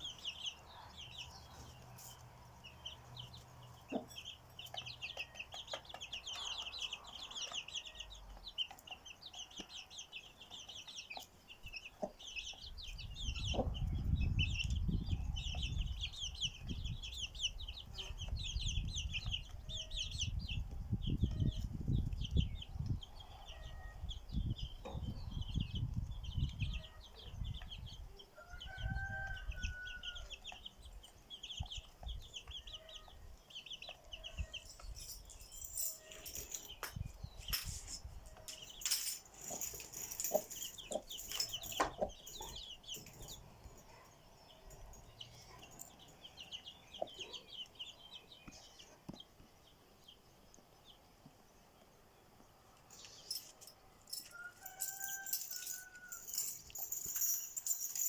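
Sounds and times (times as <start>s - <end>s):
birds chattering: 0.0s - 20.6s.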